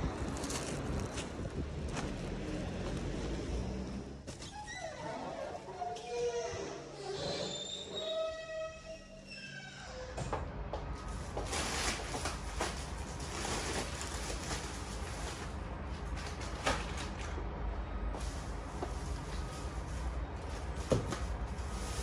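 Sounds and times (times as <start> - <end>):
things being moved and set down: 10.2 - 17.4, 18.1 - 22.0.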